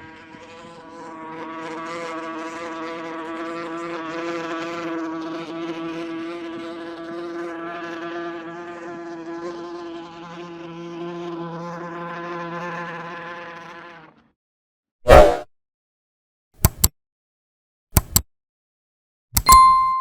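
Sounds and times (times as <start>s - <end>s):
wasp buzzing: 0.0s - 14.3s.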